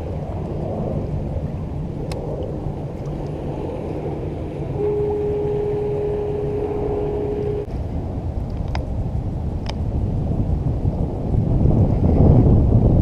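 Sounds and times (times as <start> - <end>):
boat engine rumble: 0.0 - 11.7
steady tone: 3.7 - 7.7.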